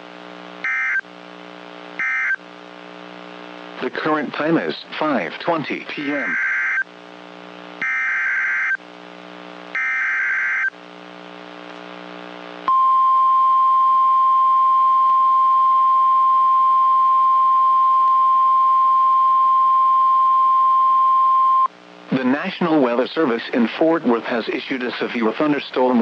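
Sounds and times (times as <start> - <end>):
harsh digital data bursts: 0.6 - 1.0, 2.0 - 2.4, 7.8 - 8.8, 9.8 - 10.7
loud steady alarm tone: 0.6 - 1.0, 2.0 - 2.4, 6.2 - 6.8, 7.8 - 8.8, 9.7 - 10.7.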